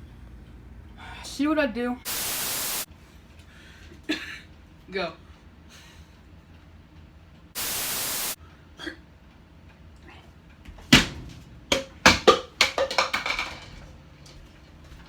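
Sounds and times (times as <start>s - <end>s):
short burst of hiss: 2.1s - 2.9s, 7.6s - 8.4s
knocks and clatter: 10.7s - 14.0s.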